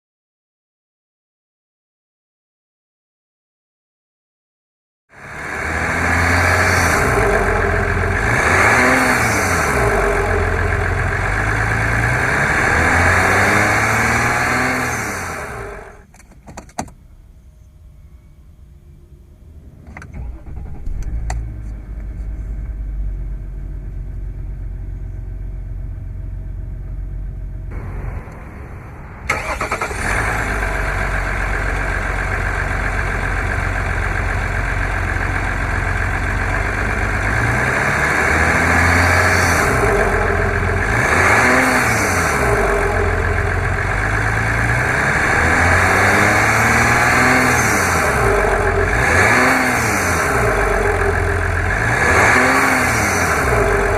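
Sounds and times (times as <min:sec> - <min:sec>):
vehicle engine starting and revving: 0:05.1 - 0:16.1, 0:19.4 - 0:53.9.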